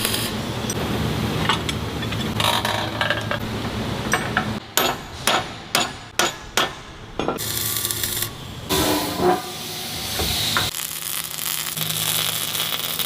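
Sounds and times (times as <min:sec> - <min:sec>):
workshop noise: 0:00.0 - 0:12.7
hammer striking metal: 0:04.1 - 0:07.5, 0:08.7 - 0:09.6.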